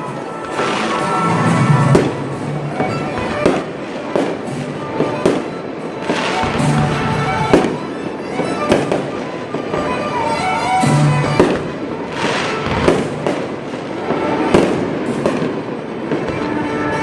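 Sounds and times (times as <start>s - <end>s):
fireworks bangs: 0.0s - 17.0s
fireworks crackling: 0.0s - 17.0s
music playing: 0.0s - 17.0s.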